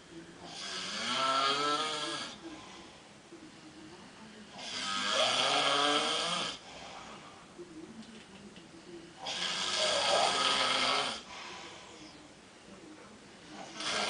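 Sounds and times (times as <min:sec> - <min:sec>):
man snoring heavily: 0:00.5 - 0:02.4, 0:04.6 - 0:06.6, 0:09.2 - 0:11.2, 0:13.7 - 0:14.0.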